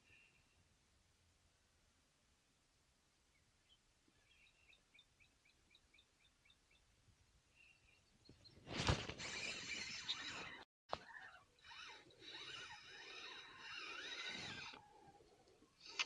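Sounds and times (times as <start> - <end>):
small bird chirping: 3.3 - 6.9, 7.5 - 16.0.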